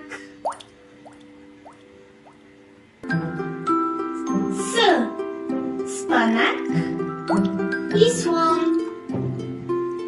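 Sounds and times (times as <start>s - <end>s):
water-drop bloop effects: 0.4s - 2.4s.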